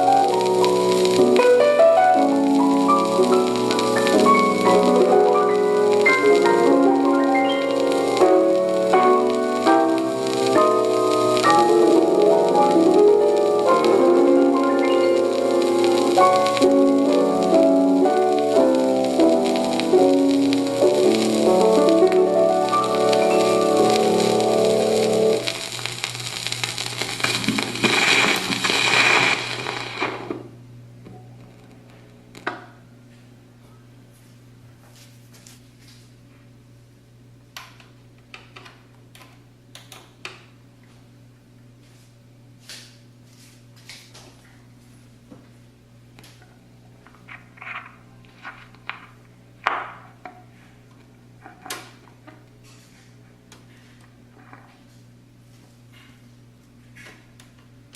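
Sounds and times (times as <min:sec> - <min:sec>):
record music: 0:00.0 - 0:30.3
scratchy stylus crackling: 0:00.0 - 0:30.4, 0:47.1 - 0:49.3
low hum of record player: 0:00.0 - 0:57.9.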